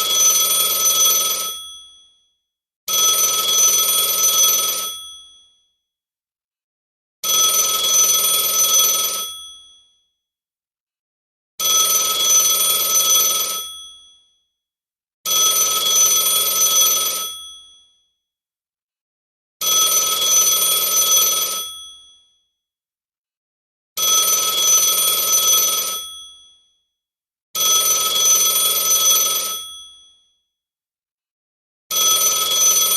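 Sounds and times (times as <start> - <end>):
telephone bell ringing: 0.0 - 2.2, 2.9 - 5.6, 7.2 - 9.9, 11.6 - 14.2, 15.3 - 17.9, 19.6 - 22.2, 24.0 - 26.6, 27.6 - 30.2, 31.9 - 32.9.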